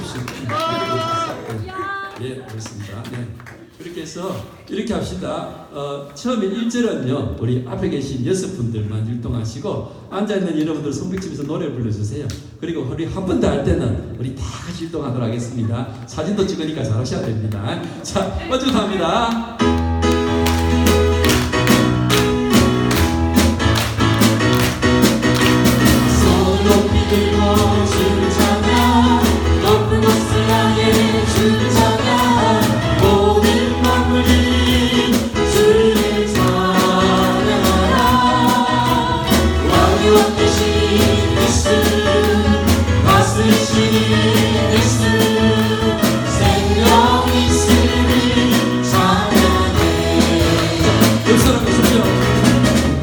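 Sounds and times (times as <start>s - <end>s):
instrumental accompaniment with bass: 19.6s - 53.0s
group singing gospel song: 20.3s - 53.0s.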